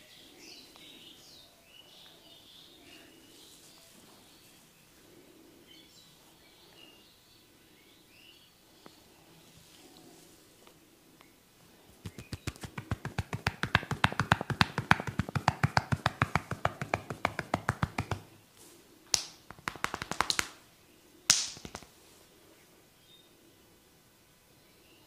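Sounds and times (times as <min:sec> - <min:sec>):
hand tapping massage slaps: 0:12.0 - 0:18.4, 0:19.1 - 0:20.6, 0:21.3 - 0:21.9.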